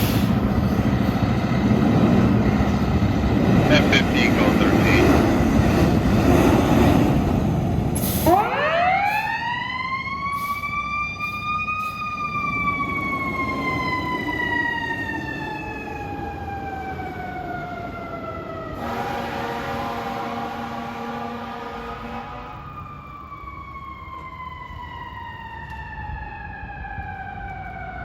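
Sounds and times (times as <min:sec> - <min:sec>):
fire engine siren winding: 0:08.0 - 0:19.0, 0:21.8 - 0:28.0.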